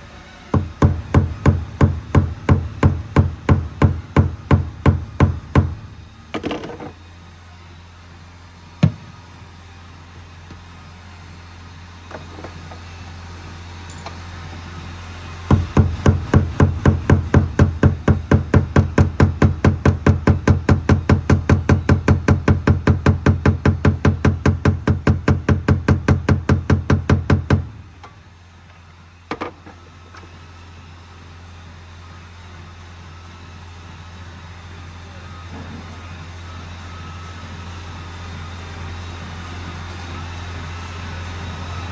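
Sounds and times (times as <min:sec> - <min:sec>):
steady low hum: 0:00.0 - 0:12.5, 0:14.4 - 0:39.8
fast even knocking: 0:15.5 - 0:27.7.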